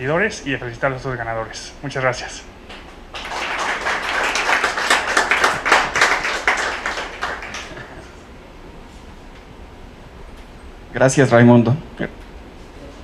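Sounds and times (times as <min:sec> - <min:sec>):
audience applauding: 0:02.7 - 0:08.2.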